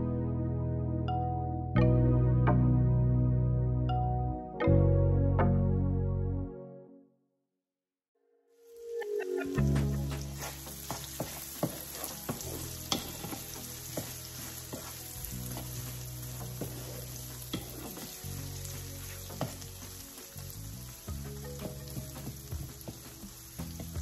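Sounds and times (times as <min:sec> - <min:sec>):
sausage sizzling in a frying pan: 0:09.8 - 0:24.0
utensil scraping a pan: 0:10.4 - 0:19.9.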